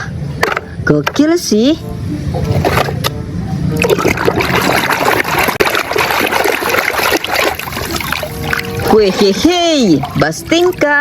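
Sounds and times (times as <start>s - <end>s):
water running and splashing: 3.8s - 10.8s.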